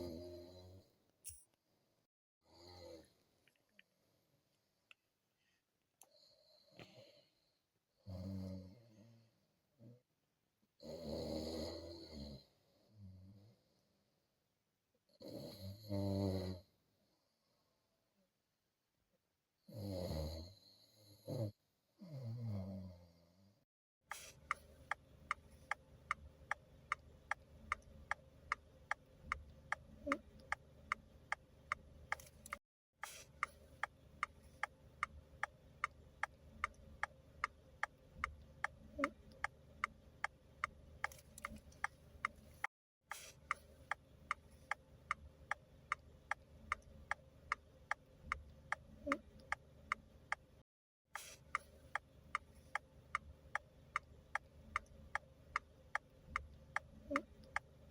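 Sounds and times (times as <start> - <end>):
mechanical ticking: 24.1 - 50.4.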